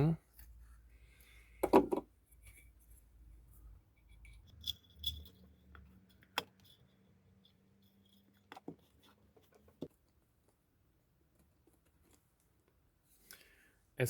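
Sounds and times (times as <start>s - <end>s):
small metal parts clicking: 4.1s - 8.6s.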